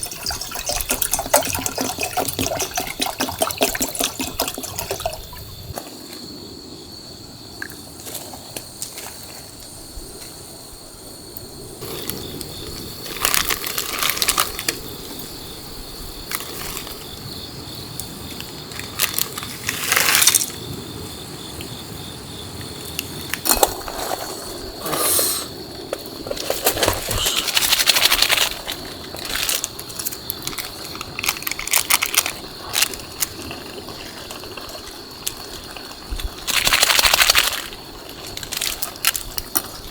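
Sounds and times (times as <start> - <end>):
packaging crinkling: 13.0 - 14.9, 26.2 - 35.5.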